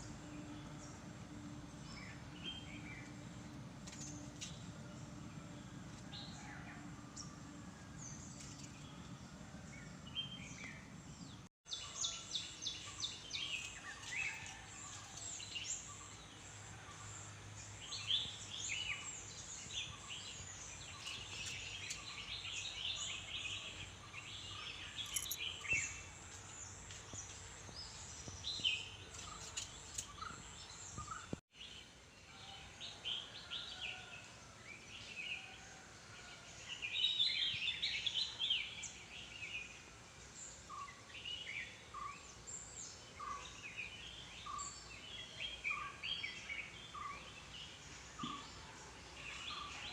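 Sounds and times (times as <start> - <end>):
birds chirping and singing: 1.7 - 31.4.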